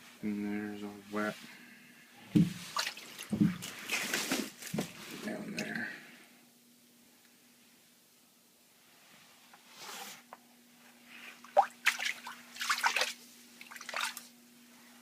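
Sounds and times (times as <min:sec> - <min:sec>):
faint steady hum: 0:00.0 - 0:15.0
wet squishing and splashing: 0:02.6 - 0:04.2, 0:11.5 - 0:14.3.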